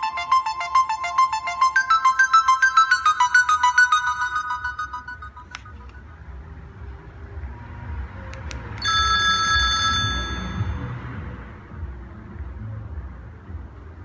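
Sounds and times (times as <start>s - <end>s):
held electronic chord: 0.0s - 5.9s
electronic ringtone melody: 0.0s - 6.2s, 8.8s - 11.1s.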